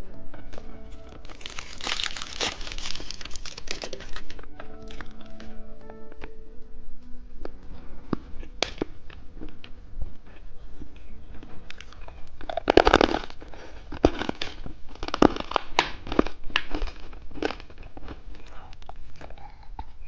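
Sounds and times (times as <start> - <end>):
candy crunching: 0.6 - 5.6, 8.1 - 19.7
candy wrapper crackling: 0.9 - 5.6, 11.6 - 19.2.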